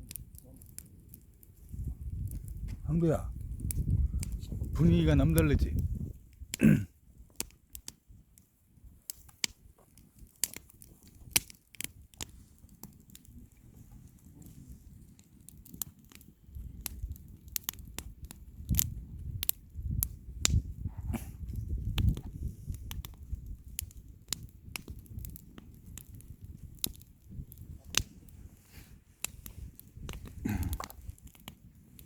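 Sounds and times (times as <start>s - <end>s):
bonfire crackling and popping: 0.0s - 32.0s.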